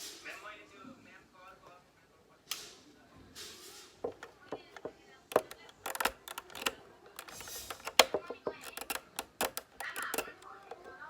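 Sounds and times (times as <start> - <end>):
sharp clicks and taps: 4.0 - 11.0.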